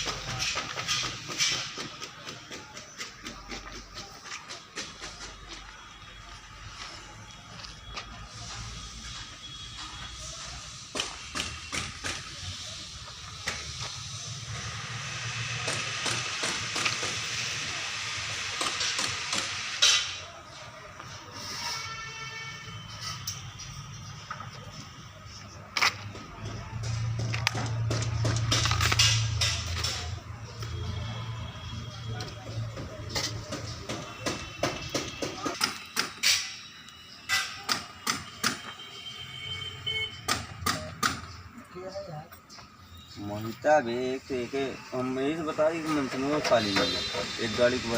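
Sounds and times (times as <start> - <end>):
steady hiss: 43.6 - 47.9.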